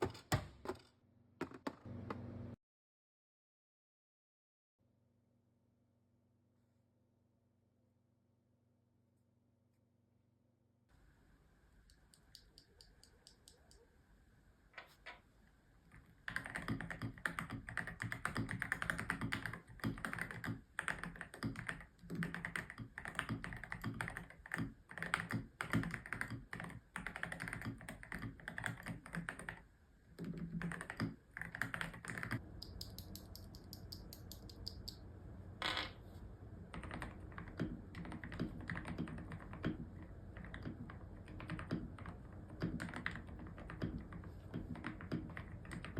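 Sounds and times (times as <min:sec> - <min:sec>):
mechanical keyboard typing: 0:16.2 - 0:29.6, 0:30.2 - 0:35.0, 0:36.7 - 0:45.9.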